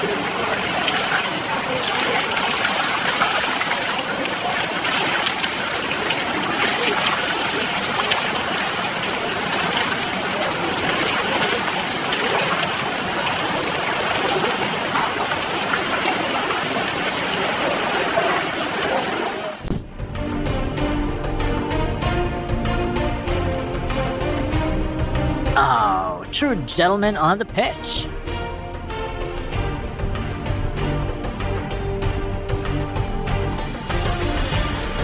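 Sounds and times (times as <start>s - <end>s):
running water trickling: 0.0s - 19.7s, 21.2s - 35.0s
small splashes: 0.0s - 19.9s.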